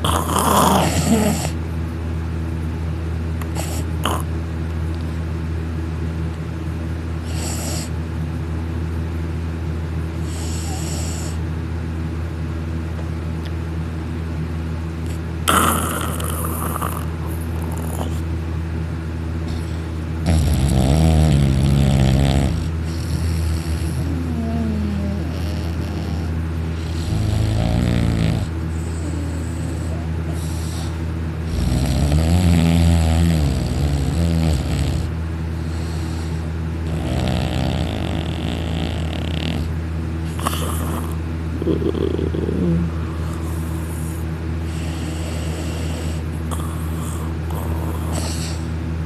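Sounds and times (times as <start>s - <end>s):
man snoring loudly: 0.0s - 1.6s, 3.5s - 4.3s, 15.4s - 18.2s, 19.5s - 39.7s, 40.3s - 48.7s
steady low hum: 0.0s - 49.0s.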